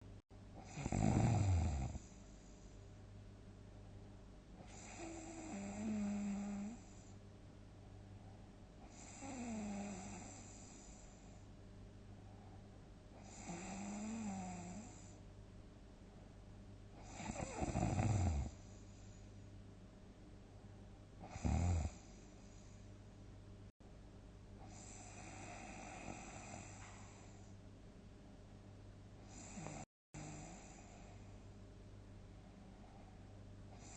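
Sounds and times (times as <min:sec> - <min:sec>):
steady low hum: 0:00.0 - 0:33.9
person snoring loudly: 0:00.6 - 0:02.0, 0:04.7 - 0:06.8, 0:08.9 - 0:10.8, 0:13.2 - 0:15.0, 0:17.0 - 0:18.6, 0:21.2 - 0:22.0, 0:24.7 - 0:26.7.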